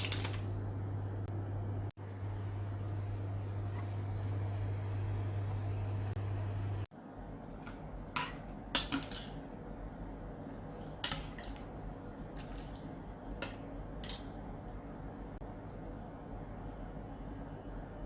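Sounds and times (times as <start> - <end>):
steady hum: 0.4 - 8.7.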